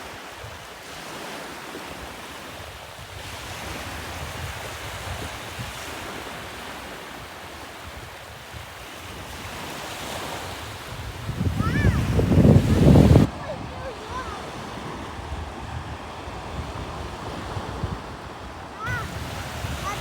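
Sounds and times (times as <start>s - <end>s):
surf washing onto shore: 0.0s - 20.0s
wind buffeting microphone: 3.0s - 20.0s.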